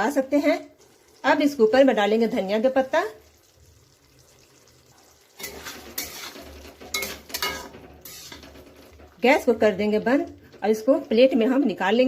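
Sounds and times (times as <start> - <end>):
spoon scraping cooking pot: 5.4 - 10.6.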